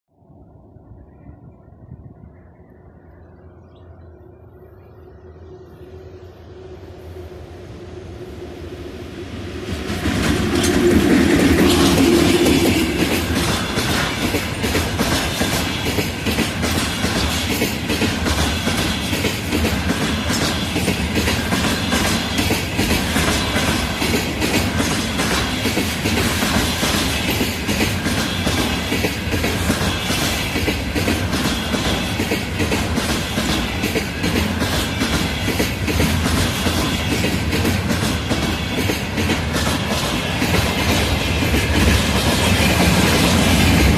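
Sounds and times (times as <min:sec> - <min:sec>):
train wheels clattering over rail joints: 0:10.0 - 0:43.9.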